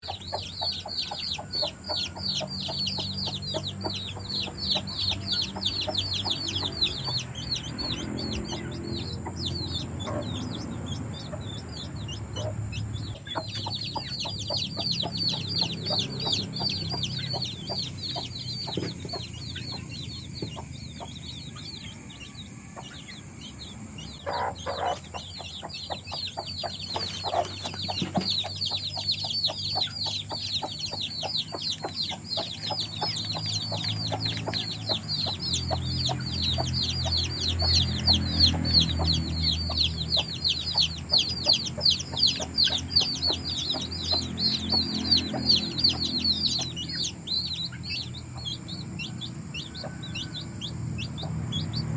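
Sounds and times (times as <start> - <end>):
chicks peeping: 0.0 - 51.9
lower chicken calls: 24.0 - 33.4.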